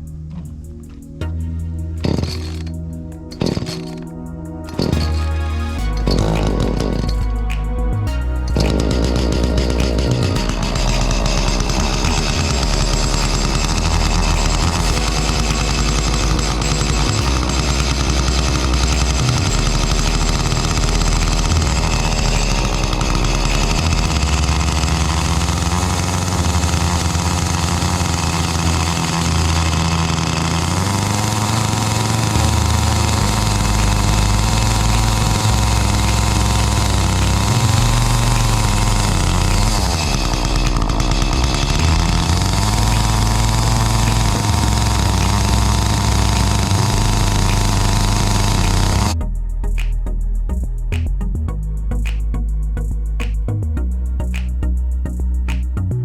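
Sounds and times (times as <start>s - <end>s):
chainsaw revving: 2.1s - 2.7s, 3.4s - 4.0s, 8.6s - 49.2s.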